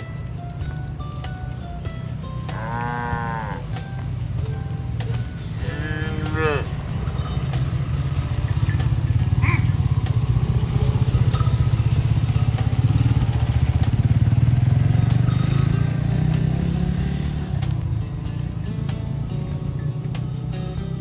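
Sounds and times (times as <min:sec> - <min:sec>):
cow mooing: 0:02.4 - 0:04.0, 0:05.4 - 0:07.5, 0:09.4 - 0:09.9
brief higher call: 0:09.4 - 0:09.8.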